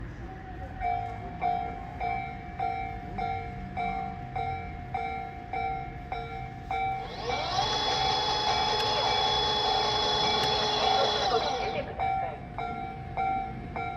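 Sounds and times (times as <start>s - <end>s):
train whine: 6.7s - 13.0s
level-crossing alarm dinging: 6.8s - 13.0s.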